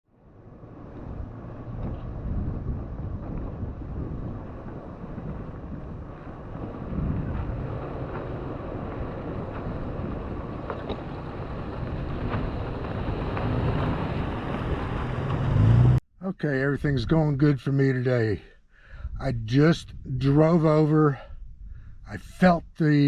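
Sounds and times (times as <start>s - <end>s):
vehicle engine and tyres rumbling: 0.1s - 18.0s
wind buffeting microphone: 0.3s - 16.0s, 18.9s - 23.0s
light knocks from rough ground: 10.5s - 11.3s.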